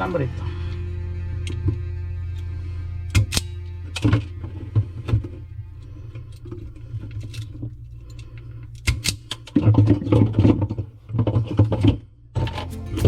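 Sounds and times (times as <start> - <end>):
steady low hum: 0.0 - 10.0
faint music: 0.0 - 10.9, 12.4 - 13.0.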